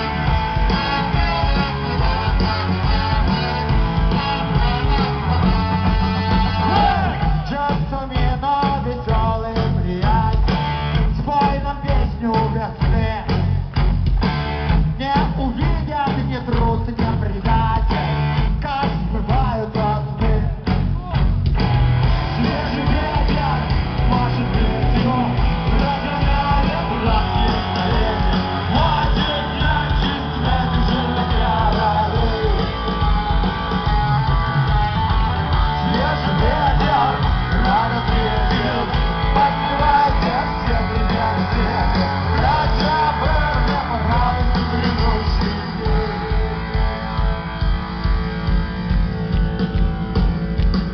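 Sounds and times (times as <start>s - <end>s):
live rock band playing: 0.0s - 50.9s
person singing: 22.3s - 47.3s.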